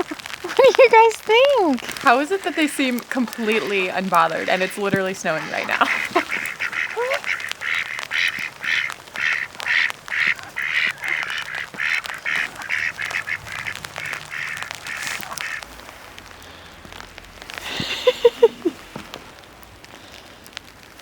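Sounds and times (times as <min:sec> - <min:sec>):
ducks quacking: 0:00.0 - 0:16.8.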